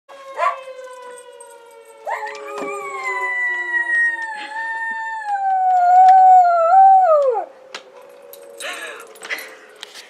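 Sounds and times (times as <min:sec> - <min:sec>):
faint steady siren tone: 0:00.1 - 0:10.0
dog howling: 0:02.0 - 0:09.3.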